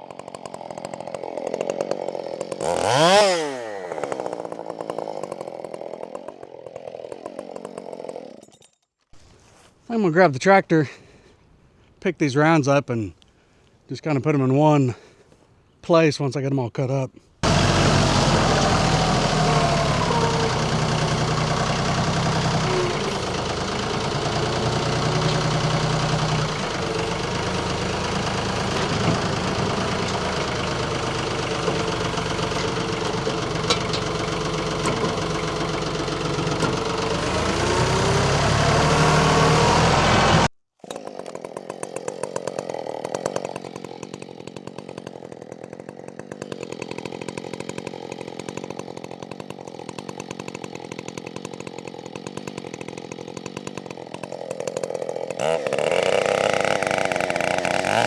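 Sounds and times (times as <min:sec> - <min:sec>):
chainsaw running: 0:00.0 - 0:08.4, 0:17.4 - 0:58.0
tractor engine revving: 0:02.6 - 0:04.4, 0:17.4 - 0:40.5, 0:55.4 - 0:58.0.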